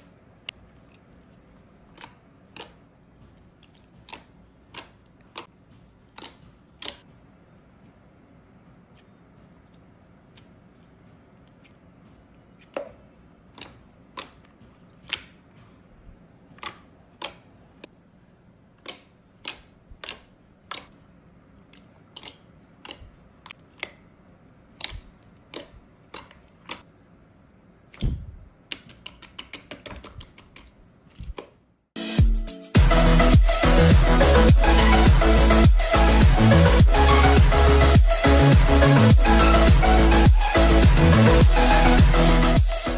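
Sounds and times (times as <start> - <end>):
music: 32.0 - 42.9.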